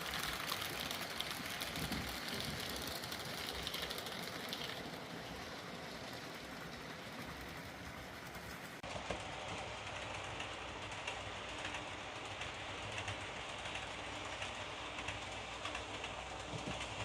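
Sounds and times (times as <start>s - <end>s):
model train motor running: 0.0s - 8.8s
wheels clicking on rails: 0.0s - 17.0s.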